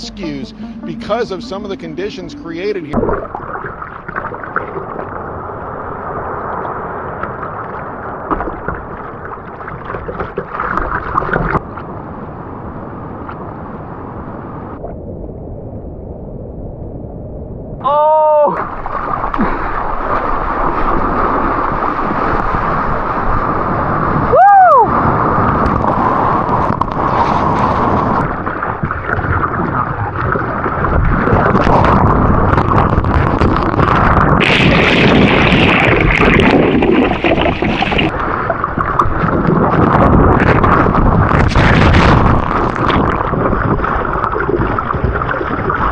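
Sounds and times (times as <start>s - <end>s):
swooping pitch glide: 0.0s - 3.1s
wind buffeting microphone: 10.8s - 45.9s
surf: 17.8s - 45.9s.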